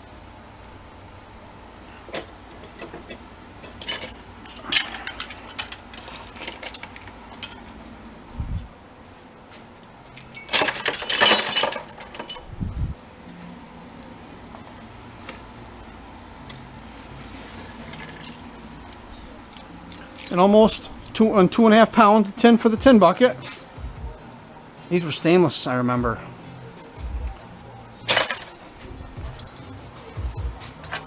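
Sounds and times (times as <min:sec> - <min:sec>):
scrap metal clinking and clattering: 0:02.1 - 0:07.7, 0:10.1 - 0:12.5, 0:17.4 - 0:21.2, 0:28.0 - 0:30.2.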